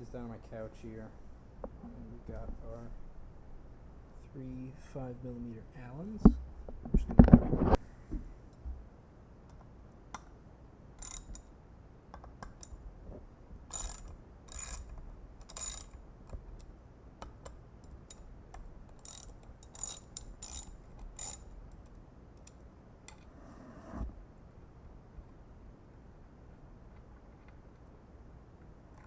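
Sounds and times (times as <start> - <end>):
allen wrench clicking: 11.0 - 11.5, 13.7 - 23.2.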